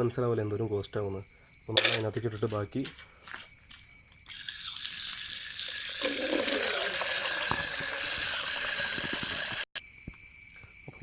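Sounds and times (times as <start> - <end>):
water running into container: 4.4 - 9.7.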